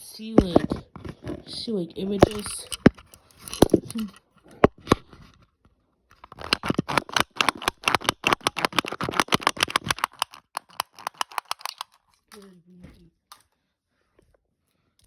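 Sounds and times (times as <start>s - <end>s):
fidget toy clicking: 2.1s - 5.0s, 6.2s - 12.5s.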